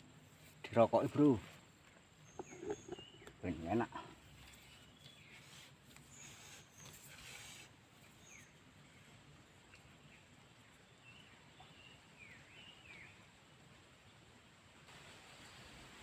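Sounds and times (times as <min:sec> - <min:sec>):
faint bird chirps: 0:02.2 - 0:13.3.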